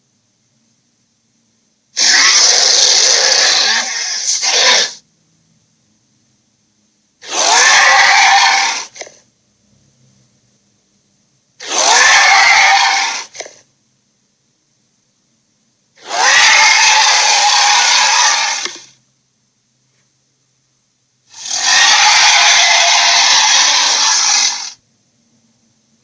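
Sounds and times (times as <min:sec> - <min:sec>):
dragon roaring: 0:02.0 - 0:05.0, 0:07.2 - 0:09.1, 0:11.6 - 0:13.6, 0:16.0 - 0:18.9, 0:21.4 - 0:24.8.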